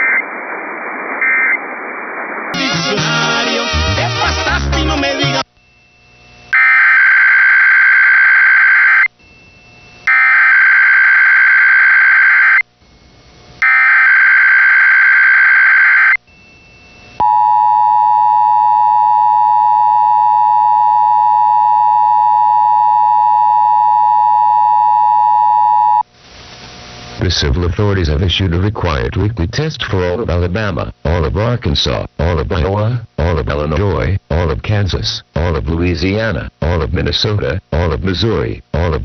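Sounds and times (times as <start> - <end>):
loud steady attention tone: 13.6 - 26.0.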